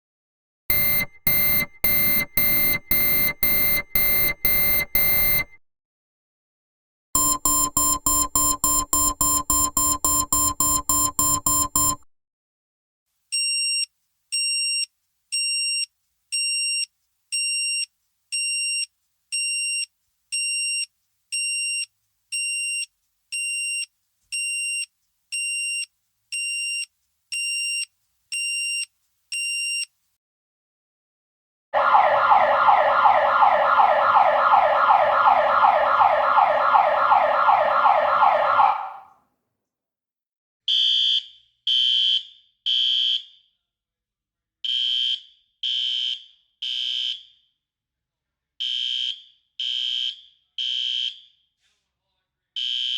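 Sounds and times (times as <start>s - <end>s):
high electronic beep: 0.7s - 5.6s, 7.2s - 12.0s
pulsing buzzing alarm: 0.7s - 5.6s, 7.2s - 12.0s, 31.8s - 39.0s
siren with rising sweeps: 0.7s - 5.6s, 31.8s - 39.1s.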